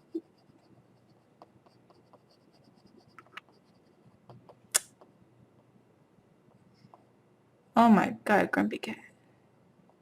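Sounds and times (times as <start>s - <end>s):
stylus drawing on plastic tablet: 0.0s - 5.8s.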